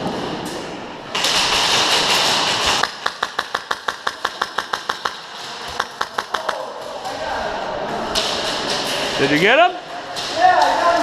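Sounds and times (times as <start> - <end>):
airsoft gun firing: 1.2 - 6.7.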